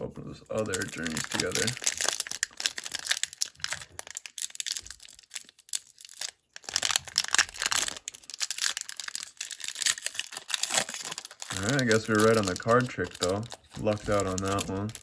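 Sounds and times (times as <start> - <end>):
foil wrappers crinkling and tearing: 0.5 - 15.0.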